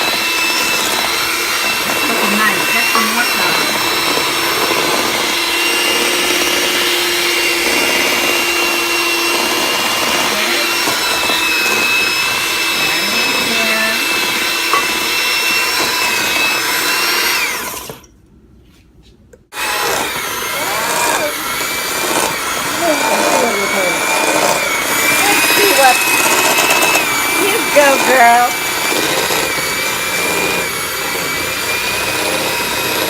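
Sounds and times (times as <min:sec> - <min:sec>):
electric hand mixer running: 0:00.0 - 0:18.1, 0:19.5 - 0:33.0.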